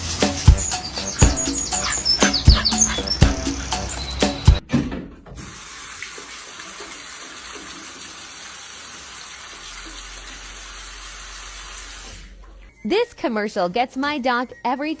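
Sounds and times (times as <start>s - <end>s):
running water rushing: 5.4s - 12.3s.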